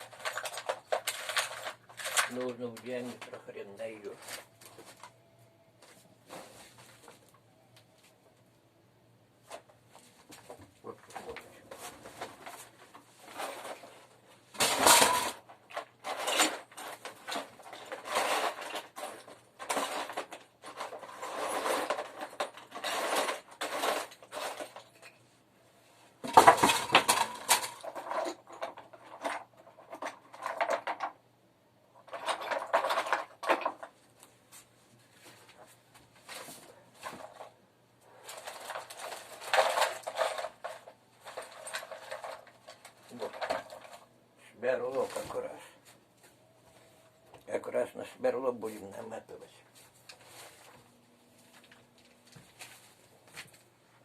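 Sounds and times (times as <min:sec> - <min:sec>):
small metal items rattling: 0:00.0 - 0:05.2, 0:10.4 - 0:25.2, 0:26.2 - 0:31.2, 0:32.0 - 0:34.0, 0:35.4 - 0:44.2.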